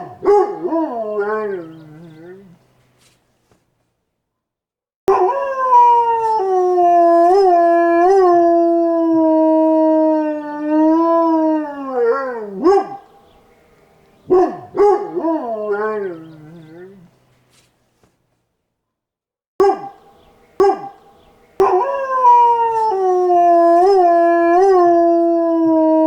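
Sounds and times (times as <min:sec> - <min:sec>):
dog howling: 0:00.0 - 0:02.6, 0:05.1 - 0:13.0, 0:14.3 - 0:17.0, 0:21.6 - 0:26.0.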